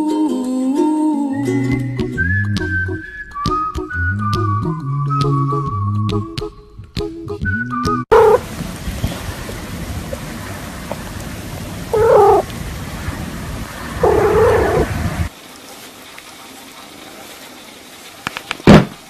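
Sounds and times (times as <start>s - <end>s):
background hiss: 8.2s - 19.0s.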